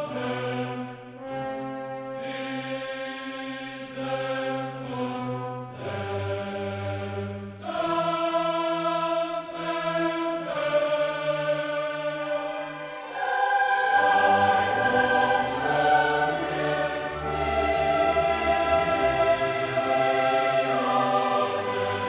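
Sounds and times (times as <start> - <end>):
choir singing held chords: 0.0 - 22.0
orchestra: 0.0 - 22.0.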